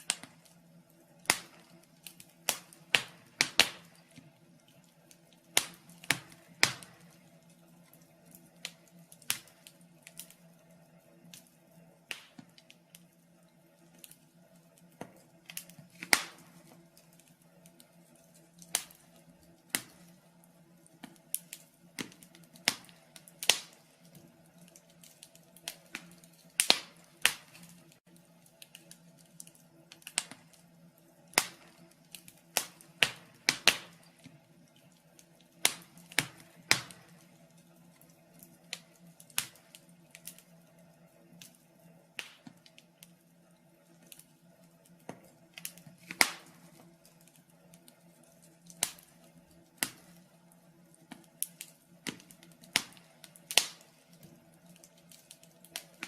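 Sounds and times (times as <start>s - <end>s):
faint steady hum: 0.0s - 56.0s
wood fire crackling: 0.0s - 56.0s.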